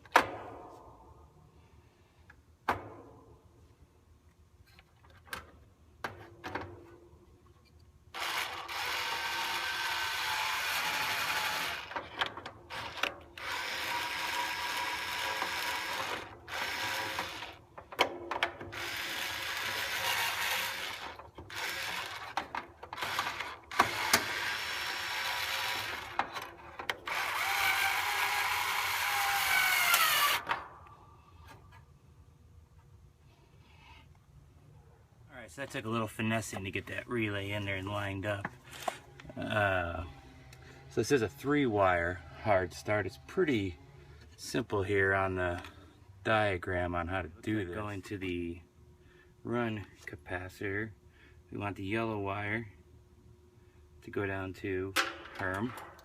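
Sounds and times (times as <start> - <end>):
power drill running: 8.2 - 17.6, 18.7 - 22.4, 23.0 - 30.5.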